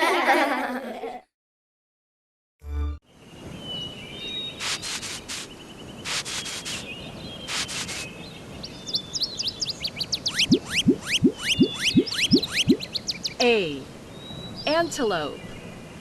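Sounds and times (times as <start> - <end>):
birds calling: 3.2 - 16.0
quick sliding chirps: 4.6 - 6.9, 7.5 - 8.1, 10.3 - 12.9
rapid pulsing bursts: 10.3 - 12.9.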